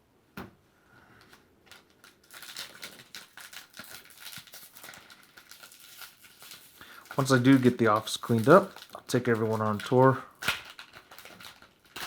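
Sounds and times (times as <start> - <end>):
foil wrapper crinkling: 1.3 - 12.0
trading cards being handled: 3.8 - 10.2.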